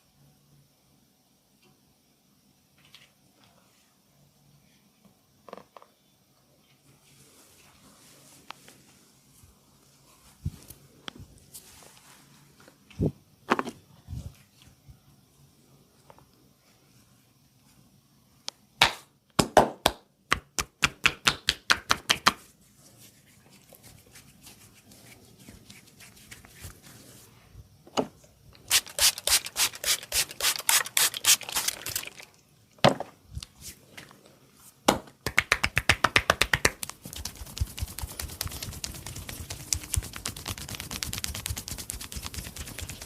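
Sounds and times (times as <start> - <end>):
hands slapping a body: 18.8 - 22.4, 34.9 - 43.0
soft rubbing on skin: 22.6 - 27.4, 36.6 - 43.0.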